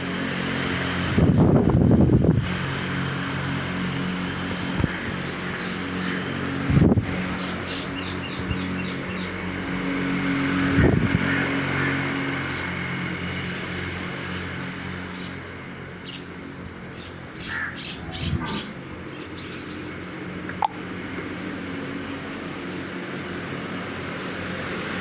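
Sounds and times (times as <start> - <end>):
low mechanical hum: 0.0 - 25.0
small birds chirping: 4.3 - 9.9, 10.8 - 20.8.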